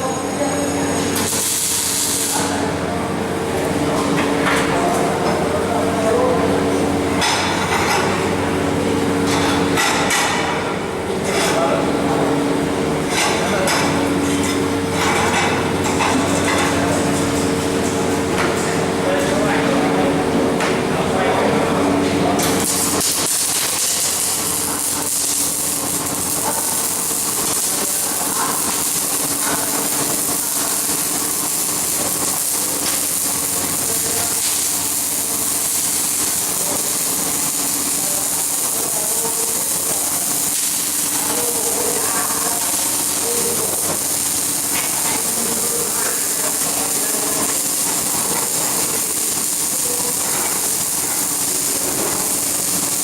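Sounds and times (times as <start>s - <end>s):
welding arc hissing crackle: 0.3s - 2.8s, 22.4s - 53.0s.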